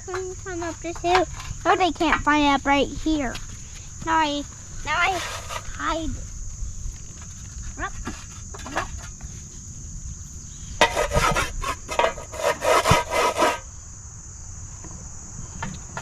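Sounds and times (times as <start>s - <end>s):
high insect hum: 0.0s - 16.0s
rough scraping and rubbing: 4.8s - 6.3s, 6.9s - 13.7s.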